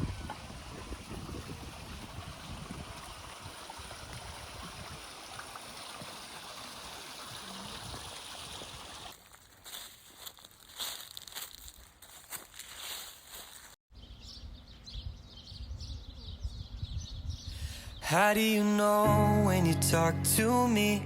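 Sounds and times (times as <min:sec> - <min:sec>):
stream water rushing: 0:00.0 - 0:09.2.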